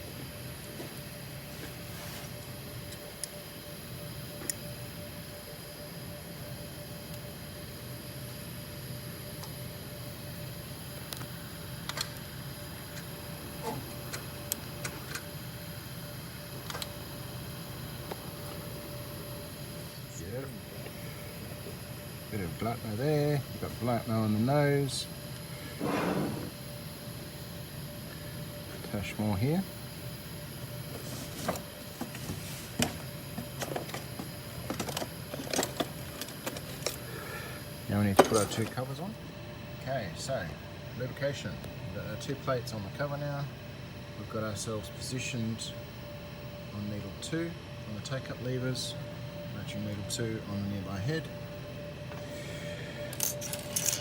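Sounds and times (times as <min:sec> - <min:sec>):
steady low hum: 0:00.0 - 0:54.0
small metal parts clicking: 0:53.1 - 0:54.0.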